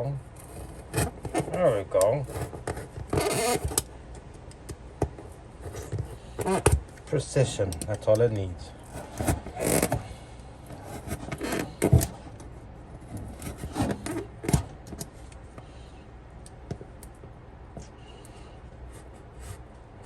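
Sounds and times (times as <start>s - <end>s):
knife scraping wall panel: 8.8s - 12.3s, 13.1s - 14.7s.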